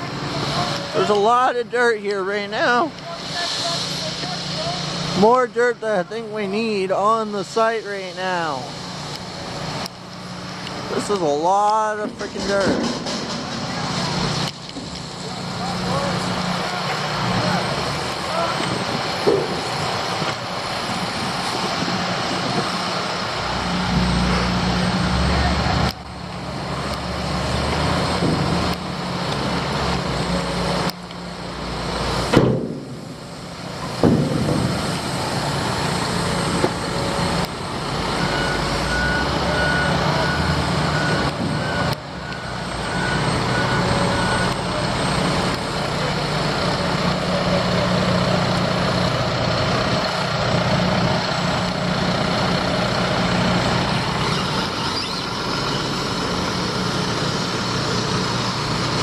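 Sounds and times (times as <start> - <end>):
diesel engines running: 0.0 - 59.0
loud knocks: 12.0 - 14.0, 32.3 - 33.1, 34.0 - 34.9
reversing alarm beeping: 37.7 - 45.6, 54.2 - 56.7.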